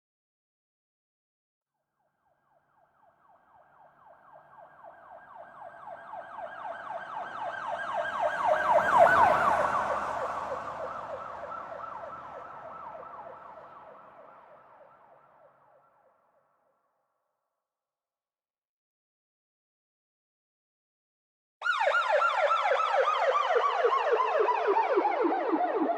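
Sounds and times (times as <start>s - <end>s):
police siren yelping: 3.1s - 14.0s, 21.6s - 25.9s
vehicle passing: 7.5s - 13.2s.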